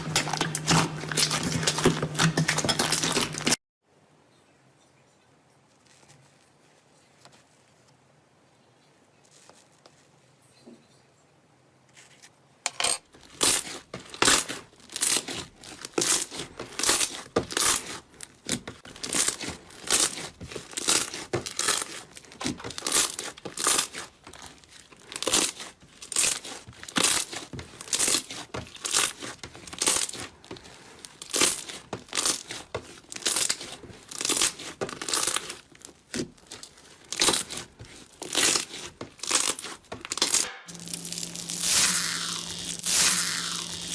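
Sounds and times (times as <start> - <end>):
slime crackling and popping: 13.2 - 43.9.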